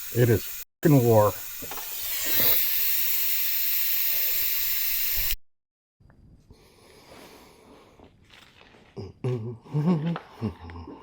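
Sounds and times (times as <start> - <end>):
loud steady hiss: 0.0 - 5.4.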